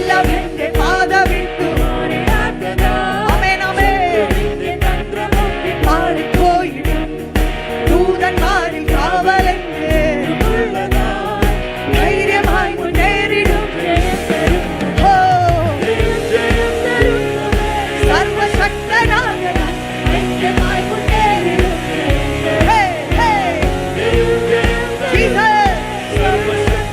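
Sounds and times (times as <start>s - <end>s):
band with drum beat: 0.0s - 26.9s
person singing: 0.0s - 26.9s.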